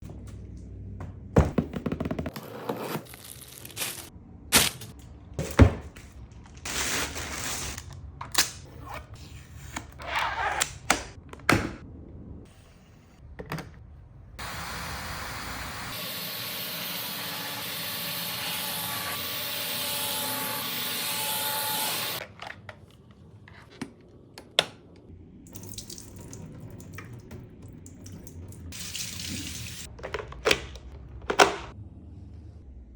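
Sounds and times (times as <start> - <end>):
steam hissing: 14.4 - 16.7.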